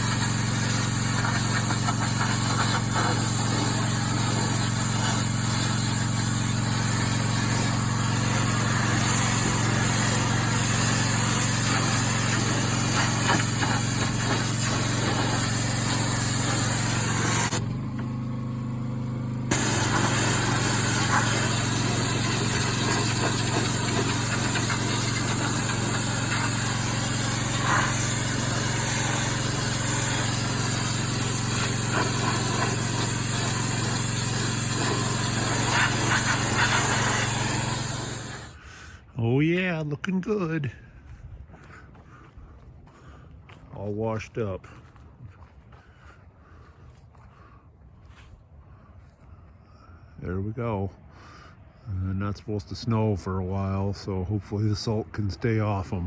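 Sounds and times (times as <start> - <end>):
water jet hissing on decking: 0.0 - 17.6, 19.5 - 38.6
pressure washer engine humming: 0.0 - 38.6.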